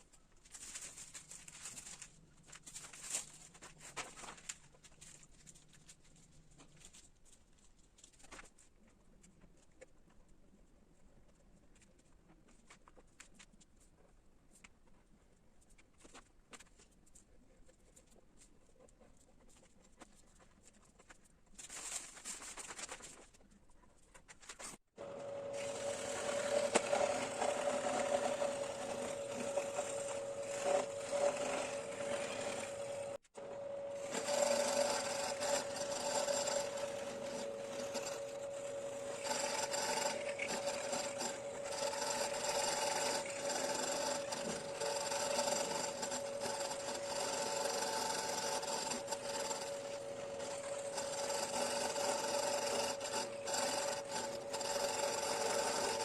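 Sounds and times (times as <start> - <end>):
carving tool rasping into wood: 25.5 - 33.2, 33.9 - 56.0.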